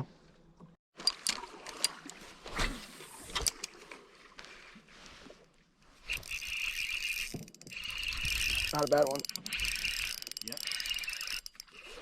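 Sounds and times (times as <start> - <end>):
fishing gear clicking and knocking: 1.0 - 2.1, 3.3 - 3.8, 6.1 - 12.0
fishing reel ratcheting whirr: 6.0 - 12.0.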